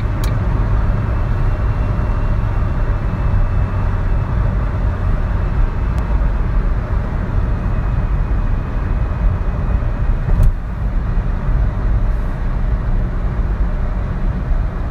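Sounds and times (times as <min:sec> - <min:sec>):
car engine drone: 0:00.0 - 0:14.9
road and wind noise: 0:00.0 - 0:14.9.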